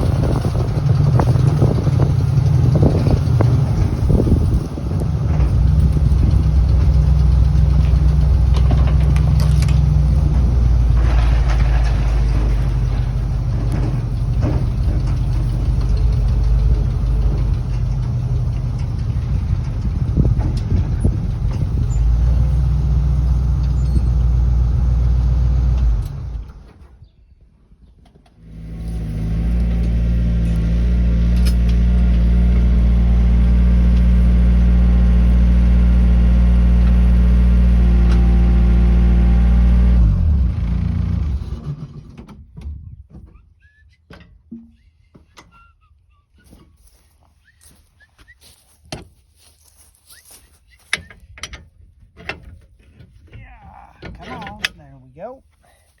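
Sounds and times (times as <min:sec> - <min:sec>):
engine running: 0:00.0 - 0:26.8, 0:28.1 - 0:42.4.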